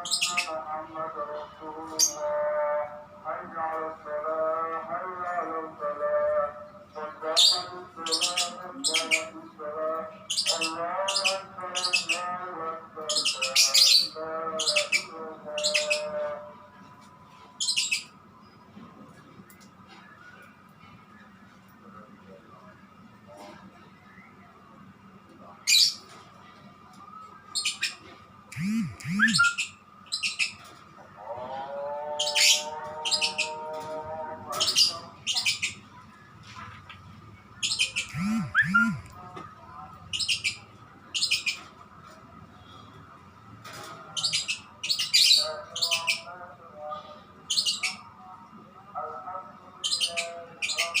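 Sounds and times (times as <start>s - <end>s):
lovebird squawking chirps: 28.6s - 30.5s, 37.6s - 39.1s.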